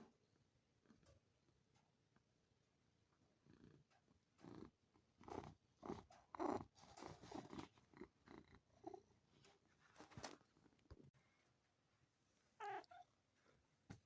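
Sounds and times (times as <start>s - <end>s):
cat purring: 3.4s - 10.3s.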